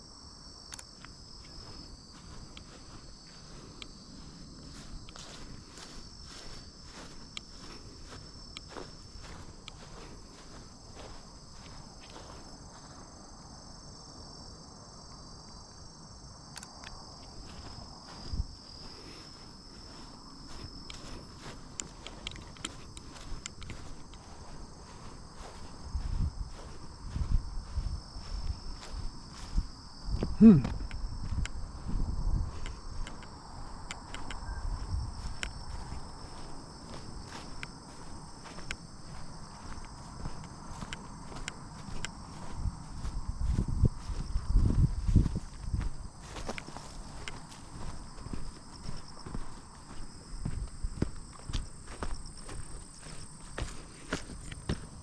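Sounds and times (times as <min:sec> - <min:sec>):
footsteps on a path: 0:00.0 - 0:15.6, 0:16.2 - 0:55.0
crickets and insects chirping: 0:00.0 - 0:55.0.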